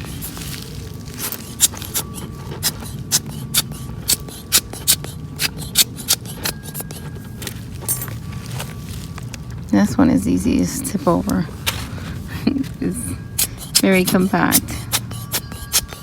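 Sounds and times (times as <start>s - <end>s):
low background hum: 0.0s - 16.0s
small scissors snipping: 2.6s - 7.0s.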